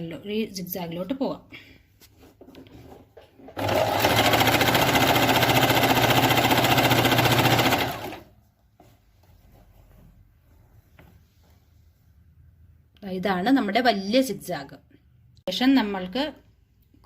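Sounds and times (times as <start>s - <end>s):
sewing machine stitching: 3.4s - 8.3s.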